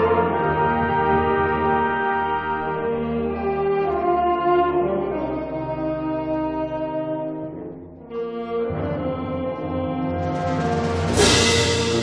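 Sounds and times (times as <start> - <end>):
wind band holding a chord: 10.2 - 12.0.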